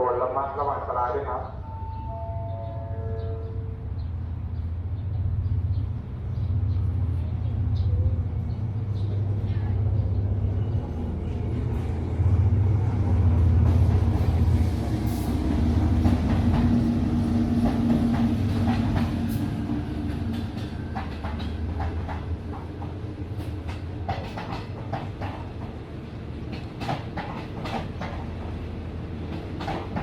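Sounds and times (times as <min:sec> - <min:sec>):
train engine rumble: 0:00.0 - 0:30.0
train wheels clicking over rail joints: 0:20.0 - 0:25.8, 0:26.4 - 0:28.6, 0:29.2 - 0:30.0.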